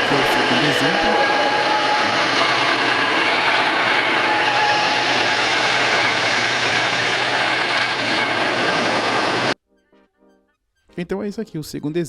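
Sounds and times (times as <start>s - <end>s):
train rumbling and rattling: 0.0s - 9.6s.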